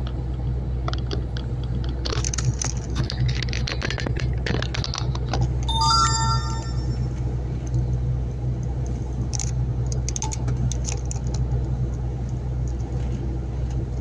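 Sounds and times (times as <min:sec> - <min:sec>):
short multi-tone chime: 0:05.7 - 0:07.1.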